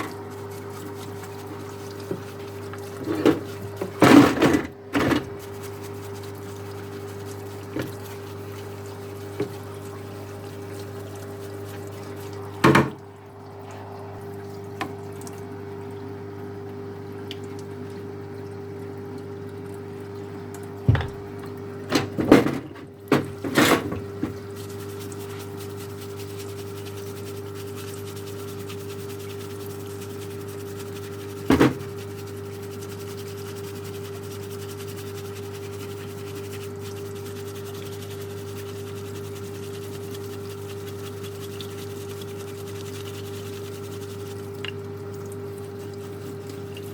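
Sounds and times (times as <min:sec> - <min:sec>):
liquid flowing: 0:00.0 - 0:04.2, 0:05.3 - 0:22.3, 0:22.9 - 0:46.9
pump humming: 0:00.0 - 0:46.9
sharp knocks and clatters: 0:12.6 - 0:13.0, 0:20.9 - 0:21.3, 0:21.9 - 0:24.4, 0:31.5 - 0:31.8.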